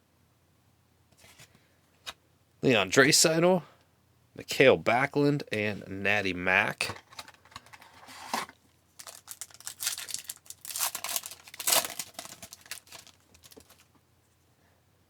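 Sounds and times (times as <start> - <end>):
card pack wrapper tearing: 8.1 - 13.9.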